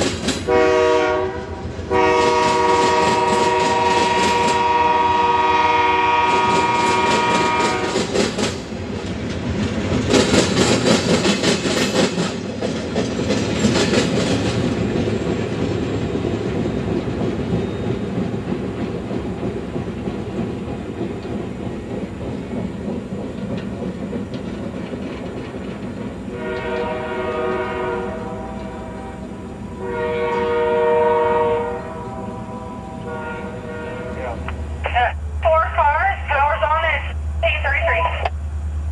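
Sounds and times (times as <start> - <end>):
train wheels clattering over rails: 0.0 - 4.9, 6.1 - 29.4
train rolling rumble: 0.0 - 38.9
locomotive air horn: 0.5 - 8.0, 26.3 - 34.4.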